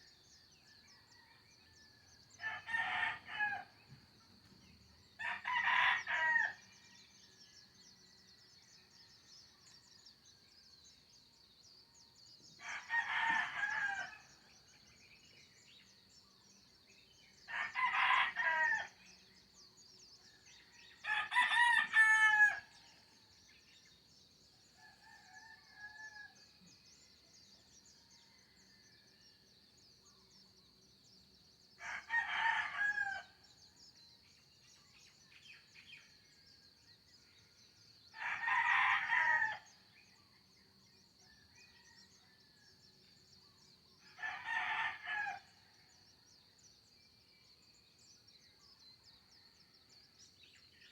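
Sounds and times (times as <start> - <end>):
roosters crowing: 2.4 - 3.7, 12.6 - 14.2, 17.5 - 18.9, 21.0 - 22.7, 31.8 - 33.2, 38.2 - 39.7, 44.2 - 45.4.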